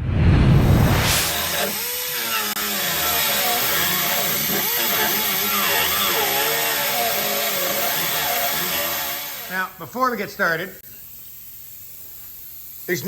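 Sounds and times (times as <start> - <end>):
angle grinder cutting metal: 1.0 - 9.8.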